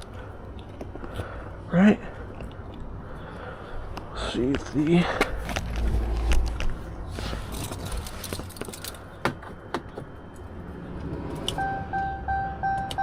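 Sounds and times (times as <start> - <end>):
rustling and light rattling: 4.5 - 10.2.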